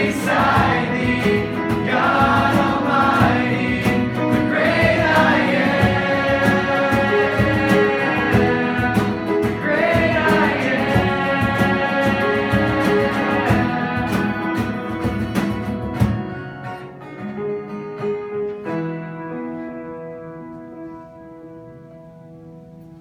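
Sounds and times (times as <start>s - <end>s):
person singing: 0.0s - 15.1s
strummed acoustic guitar: 0.0s - 23.0s.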